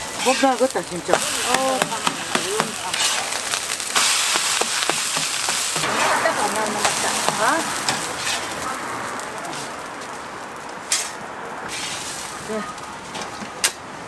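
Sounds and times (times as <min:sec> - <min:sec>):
food sizzling in hot oil: 0:00.0 - 0:10.6.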